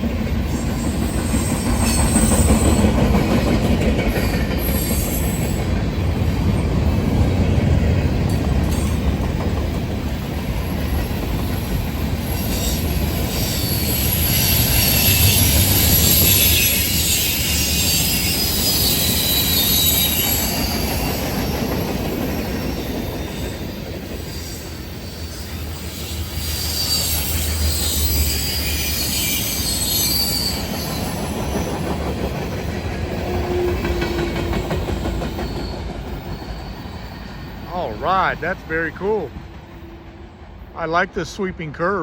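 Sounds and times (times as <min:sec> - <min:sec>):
train wheels rumbling on rail: 0:00.0 - 0:42.0
high flange squeal: 0:12.3 - 0:21.3, 0:22.8 - 0:31.8, 0:35.2 - 0:39.2.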